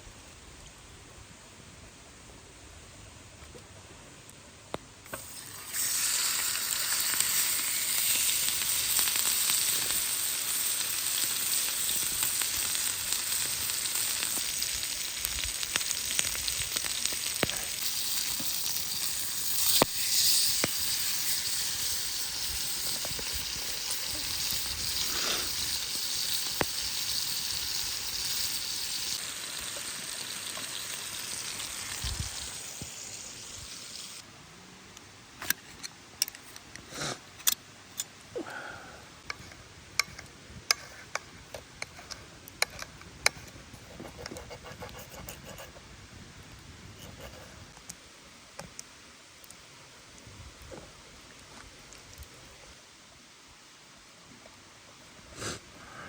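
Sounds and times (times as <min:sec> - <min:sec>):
food sizzling on hot plate: 0:05.1 - 0:34.2.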